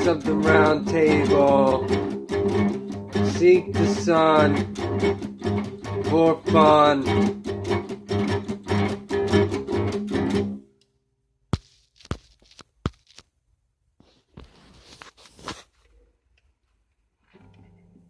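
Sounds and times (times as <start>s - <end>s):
guitar strumming: 0.0s - 10.8s
faint rustling: 14.0s - 18.0s.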